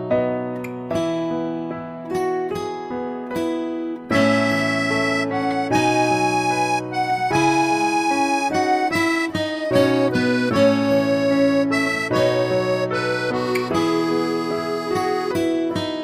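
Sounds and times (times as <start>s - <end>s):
reedy melody over held chords: 4.1s - 15.6s.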